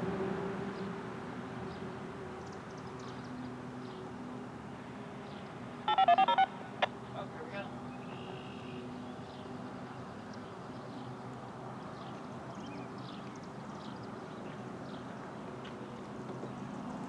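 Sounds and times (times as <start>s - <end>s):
birds chirping: 5.3s - 9.5s.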